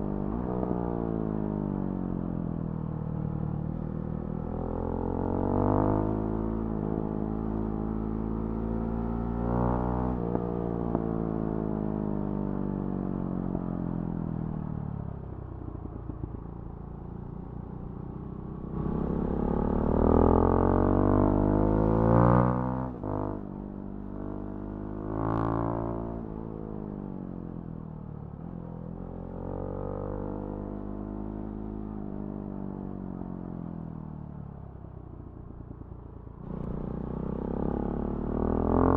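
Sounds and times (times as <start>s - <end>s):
motorcycle engine revving: 36.4s - 38.9s.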